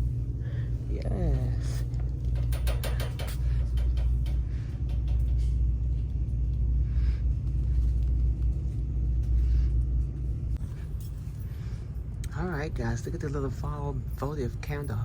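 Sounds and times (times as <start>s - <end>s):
deep rumble: 0.0s - 15.0s.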